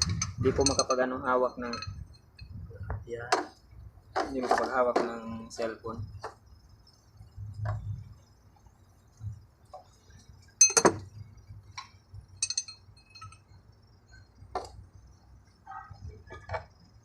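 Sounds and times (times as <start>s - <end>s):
metal tools clinking: 0.0s - 2.6s, 10.5s - 13.6s.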